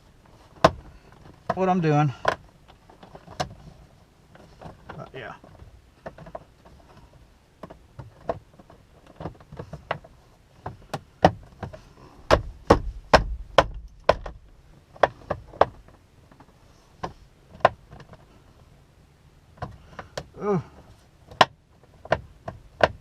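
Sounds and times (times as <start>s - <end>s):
dull thumps: 4.4s - 18.3s, 19.6s - 23.0s.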